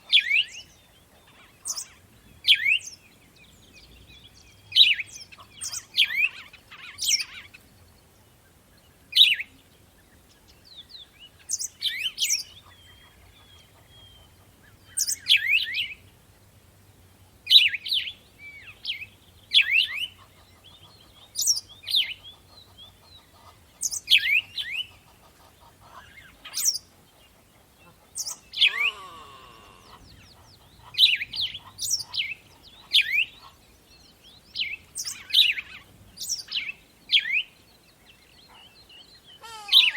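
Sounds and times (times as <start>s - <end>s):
birds chirping: 0.0s - 39.9s
lower falling bird call: 28.3s - 30.2s.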